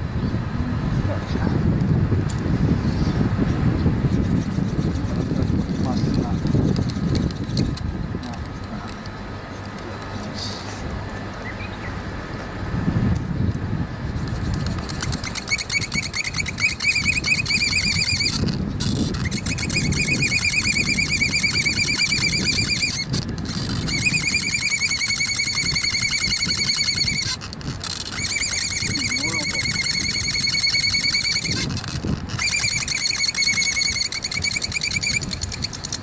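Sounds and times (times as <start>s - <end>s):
low rubbing grind: 2.8s - 10.9s, 13.9s - 36.0s
fire drill spindle squealing: 3.8s - 10.2s, 14.1s - 36.0s.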